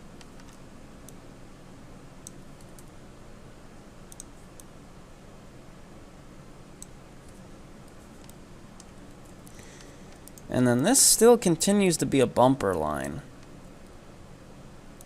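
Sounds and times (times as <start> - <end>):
faint low hum: 0.0 - 15.0
mouse and keyboard clicks: 4.1 - 4.7.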